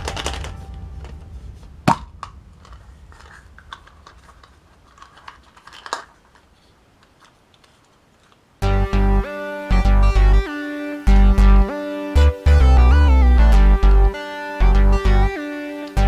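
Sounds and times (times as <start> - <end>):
plastic toys clicking and crinkling: 0.0 - 1.3, 1.9 - 8.6
background music: 0.0 - 1.7, 8.6 - 16.0.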